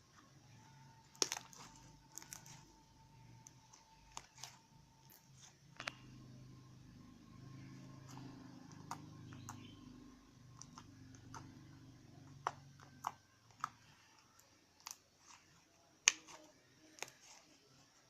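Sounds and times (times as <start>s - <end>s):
sharp small clicks and taps: 3.4s - 6.1s.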